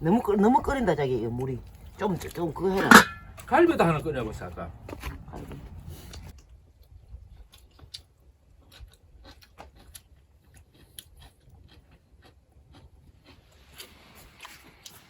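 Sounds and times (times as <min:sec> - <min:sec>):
close chewing and biting: 0:00.6 - 0:03.5, 0:04.9 - 0:15.0.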